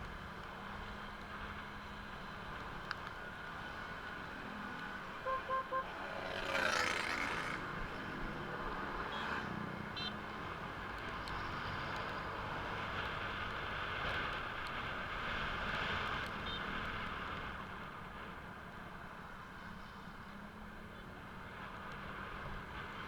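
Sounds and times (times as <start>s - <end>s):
vehicle passing close by: 4.3s - 9.9s
vehicle horn toots: 5.2s - 6.5s.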